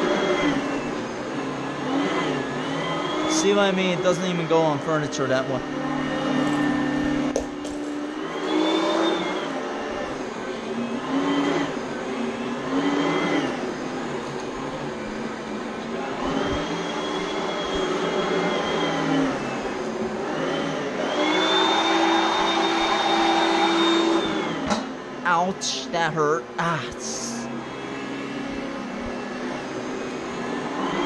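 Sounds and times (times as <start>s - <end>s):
vacuum cleaner motor whine: 0.0s - 25.4s, 26.4s - 31.0s.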